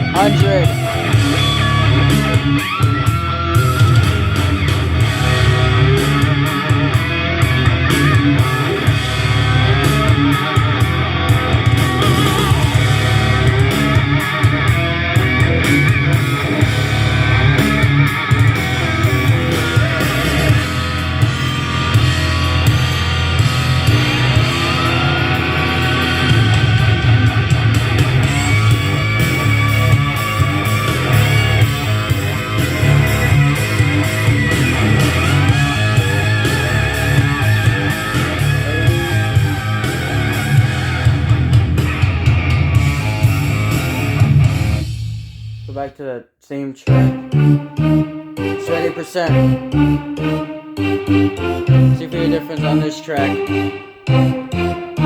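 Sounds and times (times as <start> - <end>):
rock music through speaker: 0.0 - 46.0, 46.6 - 55.0.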